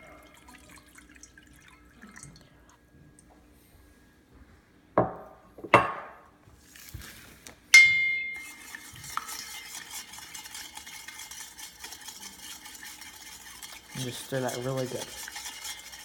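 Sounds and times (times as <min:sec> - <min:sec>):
spoon clinking against bowl: 0:07.8 - 0:16.0
spoon stirring in bowl: 0:07.8 - 0:16.0.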